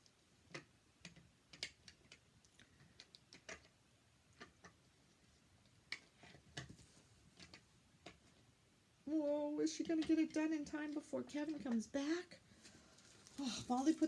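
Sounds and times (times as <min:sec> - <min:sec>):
toy cars clicking and tapping: 0:00.5 - 0:03.8.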